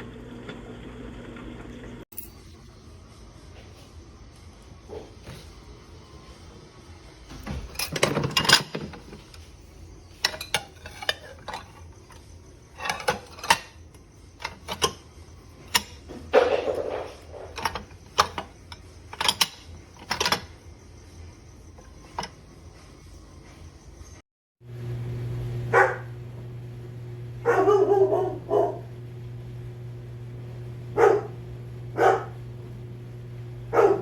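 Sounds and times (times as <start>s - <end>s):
dishes and cutlery clattering: 7.4s - 9.4s, 10.2s - 12.2s, 12.8s - 13.8s, 14.4s - 15.0s, 15.7s - 20.5s.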